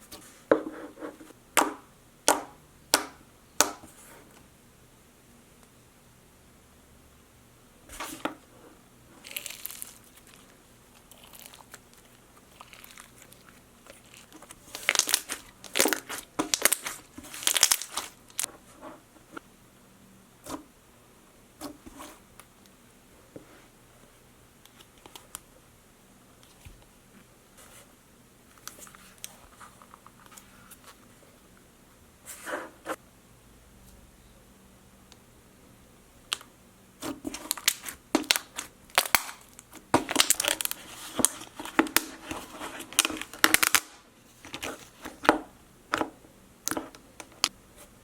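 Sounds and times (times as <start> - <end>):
slime crackling and tearing: 9.3 - 10.4, 14.0 - 18.4, 37.3 - 42.2, 43.0 - 44.0.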